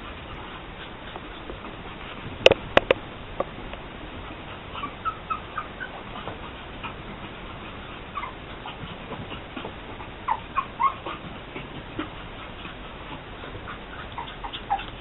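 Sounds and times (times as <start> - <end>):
puppy whimpering: 4.6 - 7.0, 7.7 - 15.0.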